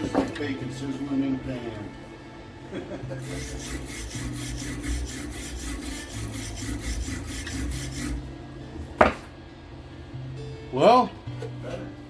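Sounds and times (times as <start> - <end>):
welder low hum: 3.1 - 10.3.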